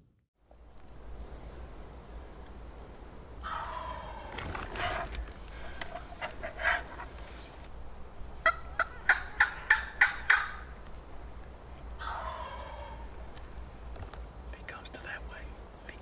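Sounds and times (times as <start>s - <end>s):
turkey gobbling: 3.4s - 7.5s, 8.4s - 10.8s, 12.0s - 13.2s.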